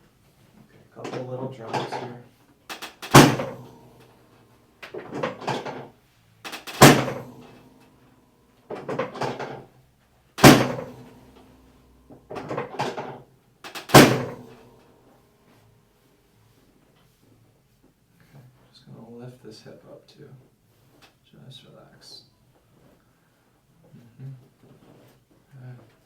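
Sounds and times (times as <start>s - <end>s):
drop table clacking: 2.7s - 3.8s, 6.5s - 7.6s, 10.4s - 11.1s, 12.3s - 14.6s.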